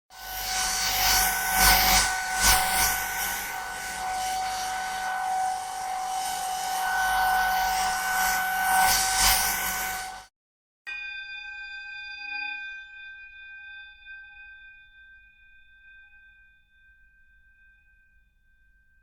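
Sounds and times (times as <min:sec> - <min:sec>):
high whine: 0:00.2 - 0:10.3.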